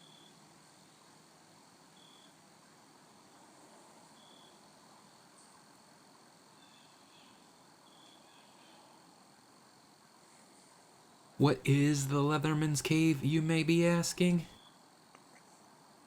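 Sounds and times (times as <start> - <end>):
faint high chirp: 2.0 - 2.4, 6.7 - 8.6.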